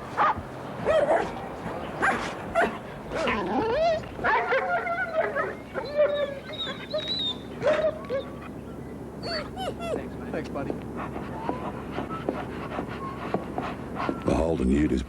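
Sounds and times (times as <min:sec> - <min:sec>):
dogs barking and yipping: 0:00.0 - 0:14.3
dogs whining: 0:00.2 - 0:14.6.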